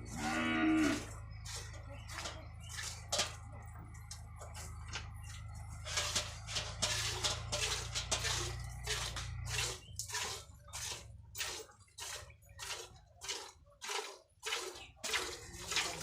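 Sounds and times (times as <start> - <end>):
milk squirting into a pail: 6.8 - 16.0.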